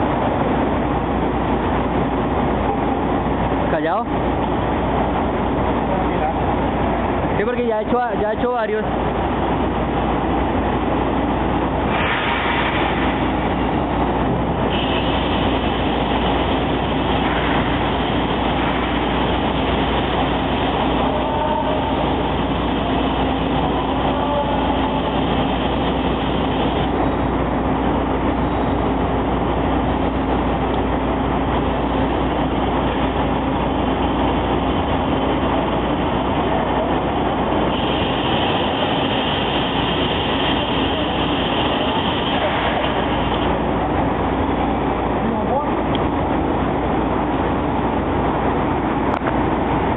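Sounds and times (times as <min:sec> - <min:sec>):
glass drilling machine running: 0:37.6 - 0:43.6.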